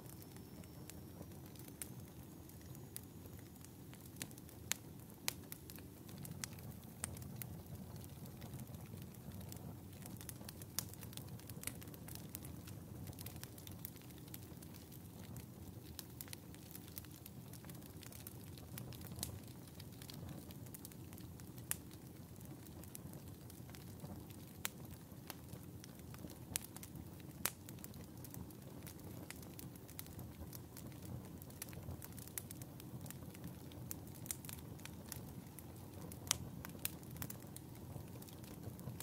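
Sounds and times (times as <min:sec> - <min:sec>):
fire crackling and popping: 0:00.0 - 0:39.0.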